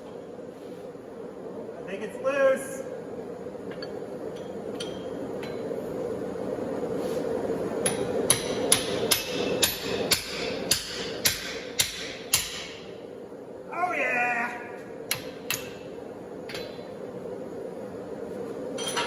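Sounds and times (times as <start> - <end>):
steady hum: 0.0 - 19.0
hammer striking steel punch: 7.9 - 12.8.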